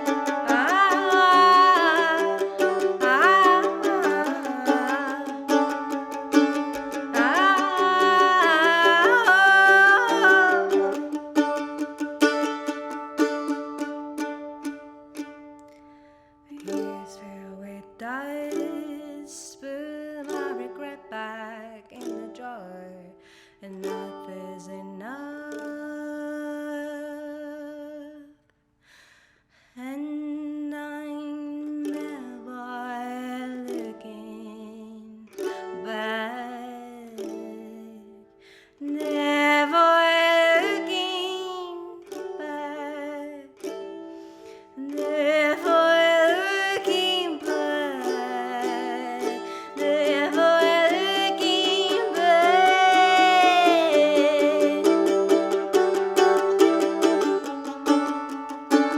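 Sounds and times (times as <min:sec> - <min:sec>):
wordless singing: 0:00.0 - 0:11.2
mandolin playing: 0:00.0 - 0:28.2, 0:30.1 - 0:58.9.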